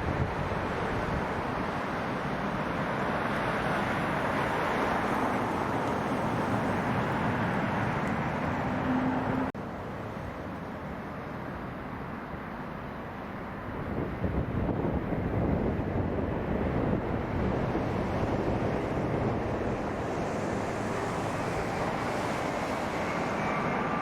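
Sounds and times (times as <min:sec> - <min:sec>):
wind on microphone: 0:00.0 - 0:09.4, 0:13.6 - 0:24.0
jet engine rushing: 0:13.8 - 0:24.0.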